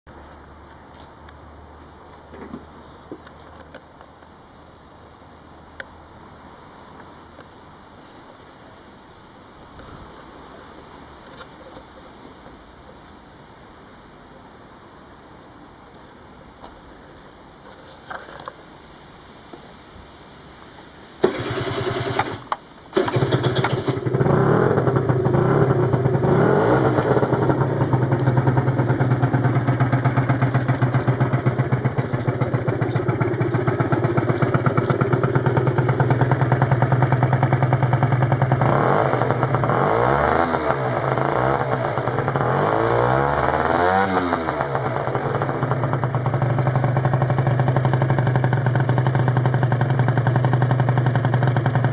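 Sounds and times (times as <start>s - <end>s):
scooter engine starting and idling: 21.2s - 51.9s
scooter throttle blips: 23.0s - 51.9s.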